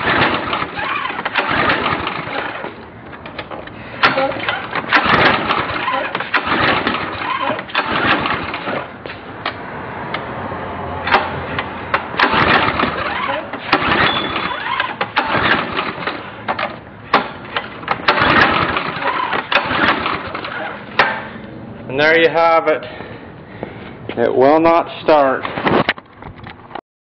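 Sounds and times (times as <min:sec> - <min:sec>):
engine cranking on recoil starter: 0:00.0 - 0:09.2, 0:11.0 - 0:21.4.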